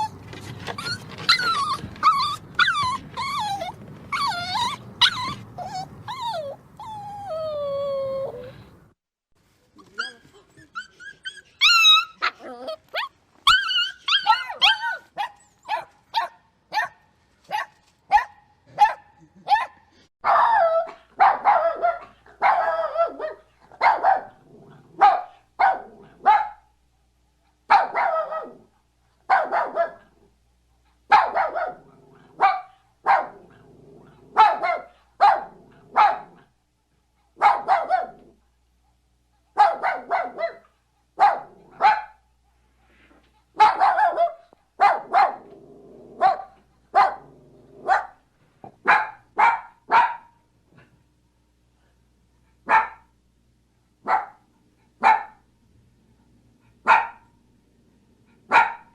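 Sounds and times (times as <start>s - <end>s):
puppy yelping whines: 0.0s - 8.7s, 9.8s - 16.9s
puppy barking in high yaps: 0.8s - 6.6s, 11.2s - 24.4s, 27.7s - 28.6s, 29.3s - 30.0s, 31.1s - 31.8s, 34.4s - 36.3s, 37.4s - 38.2s, 39.6s - 42.2s, 43.6s - 45.4s, 48.8s - 50.3s, 52.7s - 53.1s, 55.0s - 55.4s, 56.9s - 57.2s, 58.5s - 58.9s.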